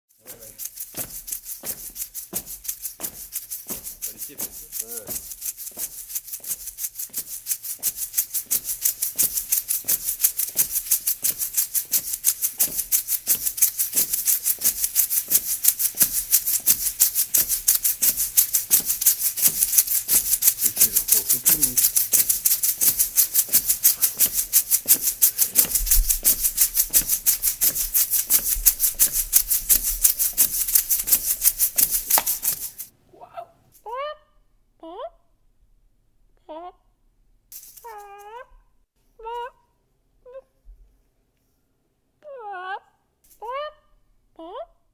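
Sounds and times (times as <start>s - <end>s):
shaker rattling: 0.1s - 33.0s, 37.5s - 38.4s, 43.2s - 43.6s.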